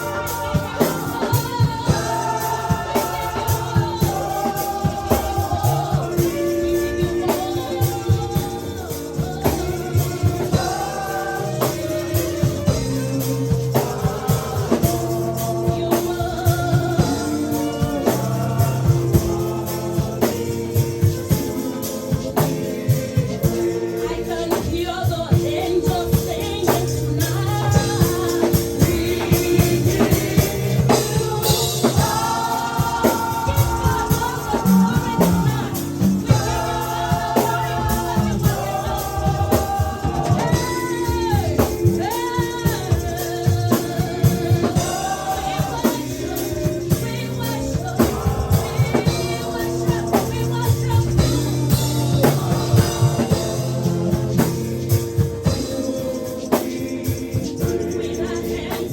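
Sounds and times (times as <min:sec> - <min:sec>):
drums and bass line: 0:00.0 - 0:58.9
gospel singing: 0:00.0 - 0:58.9.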